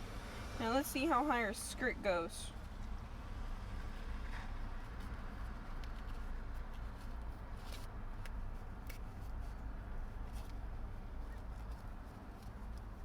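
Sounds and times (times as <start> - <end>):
plastic doll being handled: 4.4 - 13.0.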